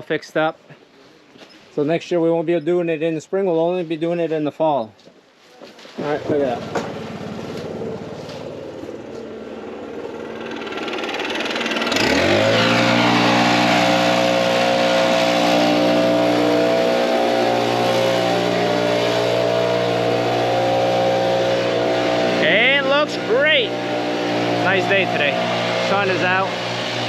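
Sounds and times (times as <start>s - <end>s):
vehicle engine: 5.8s - 27.0s
steady rushing noise: 6.6s - 27.0s.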